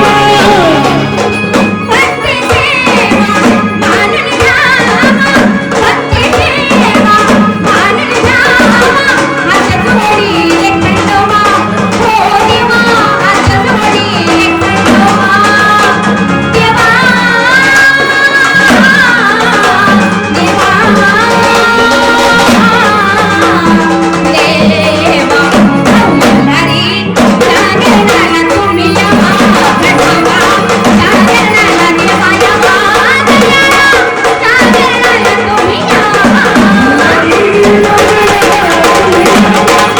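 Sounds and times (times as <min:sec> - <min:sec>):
drums keeping steady beat: 0:00.0 - 0:39.9
woman singing: 0:00.0 - 0:39.9.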